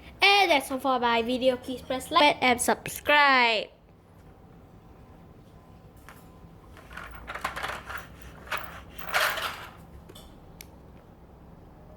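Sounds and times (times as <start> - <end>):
handling rustling and clattering: 6.1 - 10.3.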